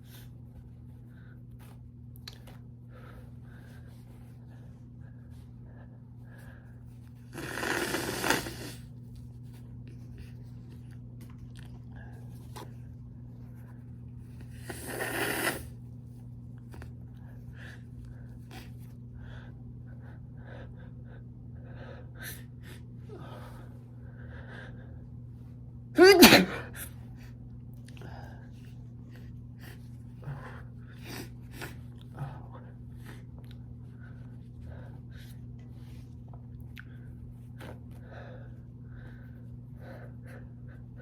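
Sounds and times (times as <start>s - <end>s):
man sneezing: 26.0s - 26.9s.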